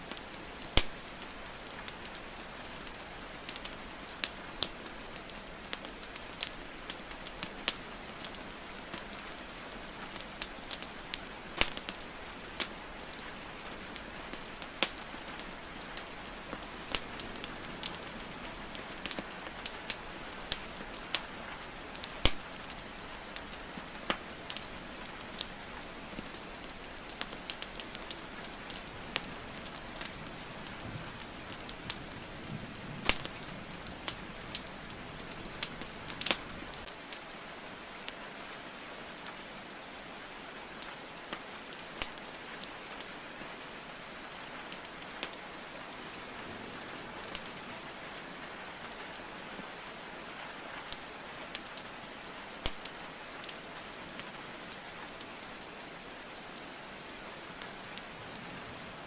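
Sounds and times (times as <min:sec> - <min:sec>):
burning logs crackling: 0:00.0 - 0:59.0
rain hiss: 0:00.0 - 0:59.0.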